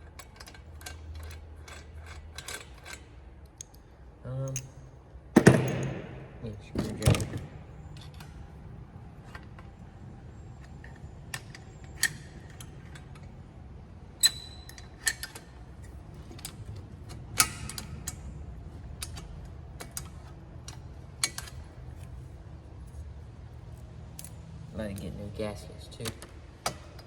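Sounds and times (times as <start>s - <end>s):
metal tools clicking and clinking: 0.0s - 6.0s, 10.4s - 13.4s, 14.2s - 23.0s, 23.6s - 27.0s
steady low hum: 0.0s - 27.0s.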